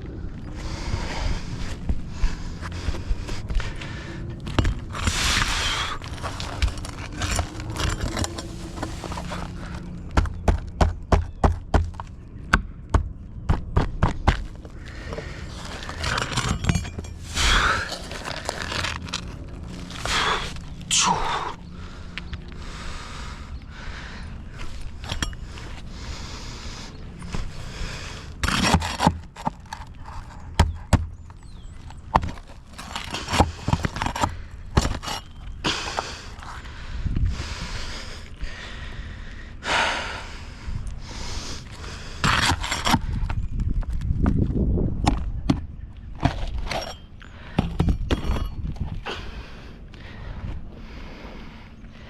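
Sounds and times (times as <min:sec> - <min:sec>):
scraping and handling noise: 0:01.6 - 0:10.4, 0:14.1 - 0:20.9
scraping on hard surface: 0:02.4 - 0:09.9.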